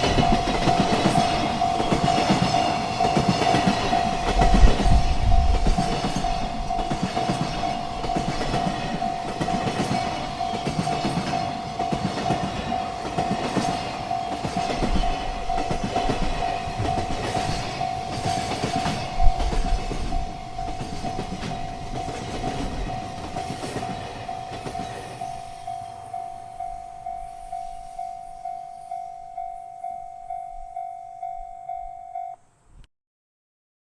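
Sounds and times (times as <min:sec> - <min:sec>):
train wheels clattering over rail joints: 0:00.0 - 0:25.4
crossing signal warning tone: 0:00.0 - 0:32.5.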